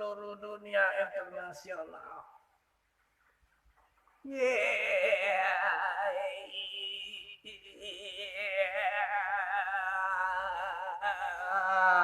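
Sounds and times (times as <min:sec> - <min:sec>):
person singing operatic vibrato: 0:04.3 - 0:12.0.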